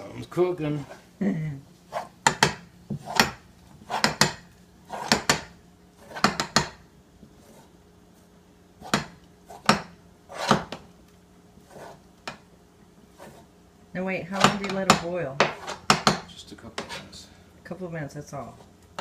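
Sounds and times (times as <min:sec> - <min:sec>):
knife scraping on wooden board: 0:02.9 - 0:06.7, 0:07.3 - 0:07.7, 0:08.8 - 0:10.8, 0:11.6 - 0:12.0, 0:13.1 - 0:13.5, 0:15.4 - 0:16.1, 0:16.8 - 0:17.2.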